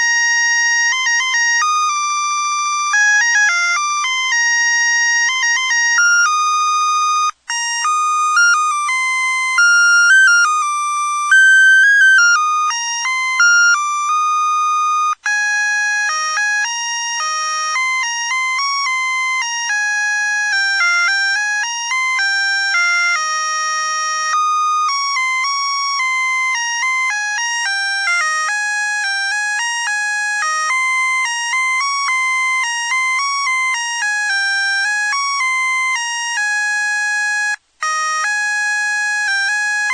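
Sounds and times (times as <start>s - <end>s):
beeping electronic melody: 0.0s - 28.2s.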